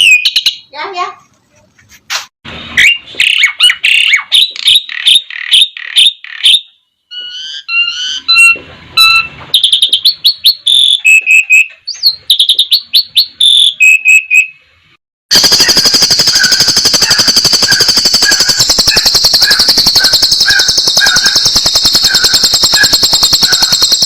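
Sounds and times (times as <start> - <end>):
starling singing: 15.4 - 24.0.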